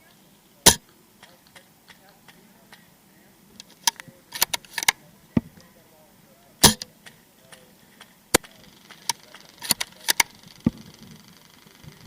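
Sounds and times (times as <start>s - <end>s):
airsoft gun shots: 0.6s - 0.8s, 6.6s - 6.9s.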